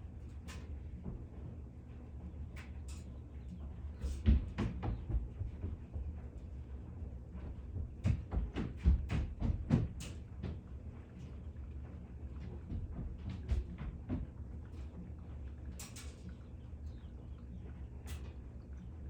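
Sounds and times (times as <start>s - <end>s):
low hum: 10.1s - 19.0s.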